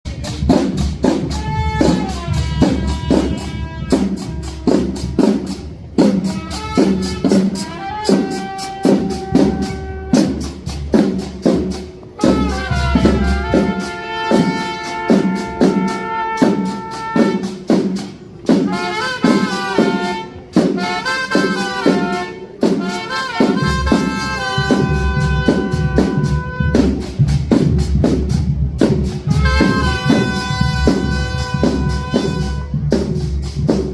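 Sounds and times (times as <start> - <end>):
steady drum beat: 0.0 - 33.9
trumpet melody: 1.0 - 27.3, 29.2 - 33.9.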